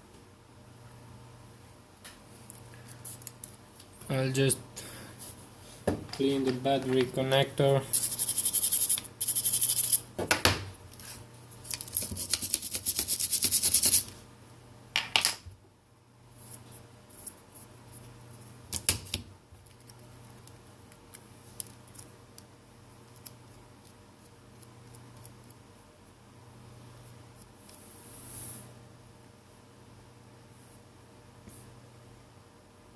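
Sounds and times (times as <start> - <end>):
faint handling noise: 5.2 - 7.5.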